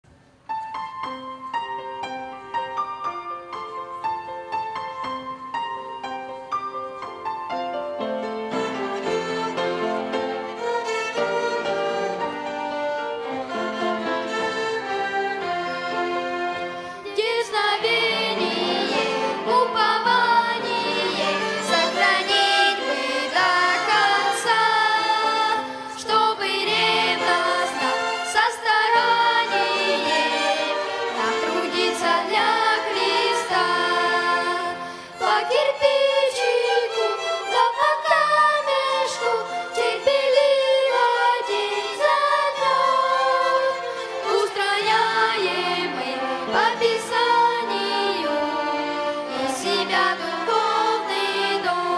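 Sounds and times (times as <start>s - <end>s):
violin ensemble playing hymn: 7.8s - 51.9s
voices singing: 13.2s - 51.9s.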